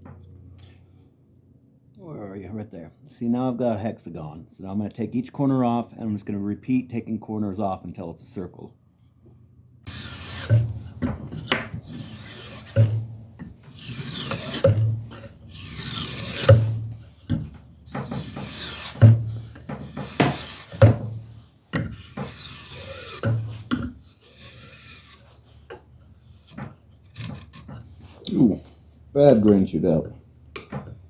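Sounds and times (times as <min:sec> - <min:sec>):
spokeshave scraping wood: 0:09.9 - 0:31.0.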